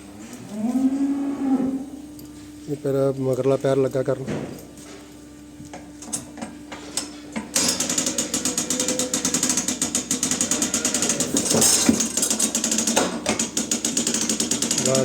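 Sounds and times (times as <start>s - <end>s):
winch ratcheting clatter: 7.6s - 15.0s.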